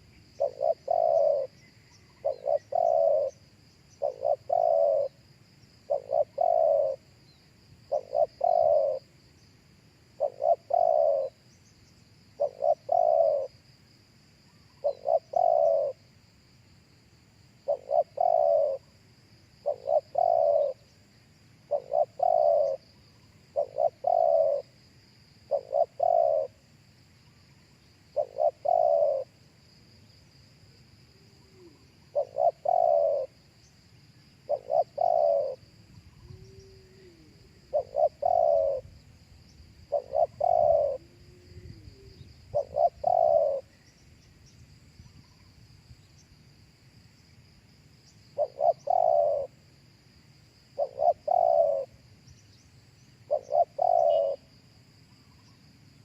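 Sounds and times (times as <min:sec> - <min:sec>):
dove cooing: 0:00.0 - 0:05.2, 0:05.9 - 0:07.1, 0:07.9 - 0:09.1, 0:10.2 - 0:11.4, 0:12.4 - 0:13.6, 0:14.7 - 0:16.0, 0:17.6 - 0:18.9, 0:19.6 - 0:20.9, 0:21.6 - 0:24.8, 0:25.5 - 0:26.6, 0:28.2 - 0:29.4, 0:31.1 - 0:33.4, 0:34.5 - 0:39.2, 0:39.8 - 0:43.8, 0:48.3 - 0:49.6, 0:50.8 - 0:52.0, 0:53.2 - 0:54.5.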